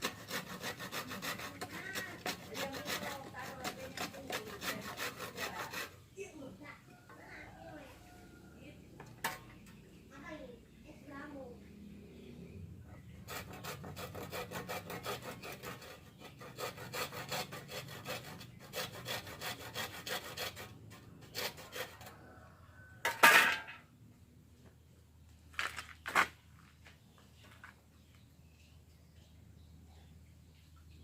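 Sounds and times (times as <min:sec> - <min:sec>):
hand saw cutting bamboo: 0:00.0 - 0:06.0, 0:13.2 - 0:22.2.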